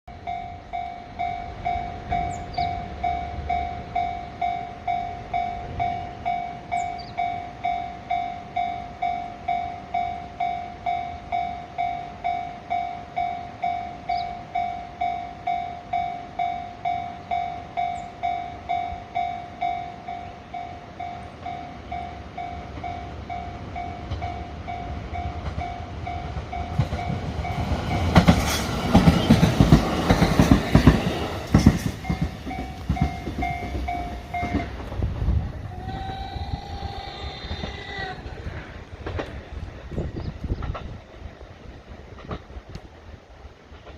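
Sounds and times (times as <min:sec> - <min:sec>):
level crossing warning bell: 0:00.1 - 0:29.8, 0:32.0 - 0:35.0
electric train arriving: 0:00.1 - 0:43.9.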